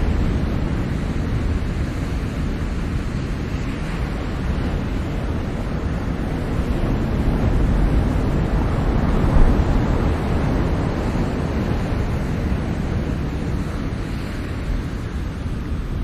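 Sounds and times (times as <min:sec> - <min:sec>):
waves breaking: 0:00.0 - 0:16.0.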